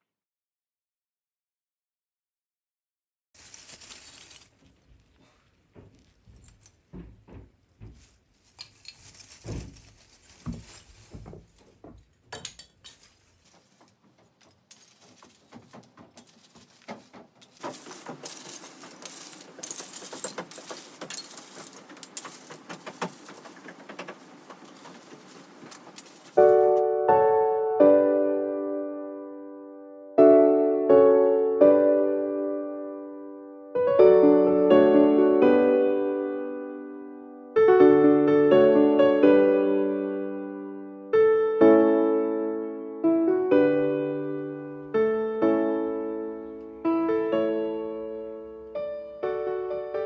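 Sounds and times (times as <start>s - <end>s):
light clicking and rattling: 5.8s - 26.8s
metal hardware clinking: 12.3s - 26.8s
piano music: 14.4s - 50.0s.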